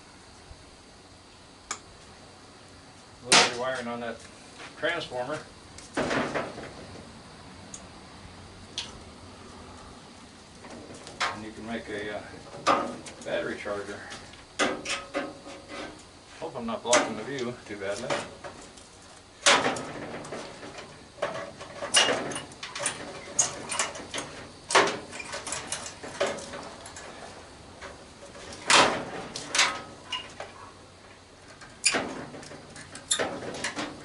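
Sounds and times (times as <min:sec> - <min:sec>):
light metal ticks and rattles: 0:16.9 - 0:30.6.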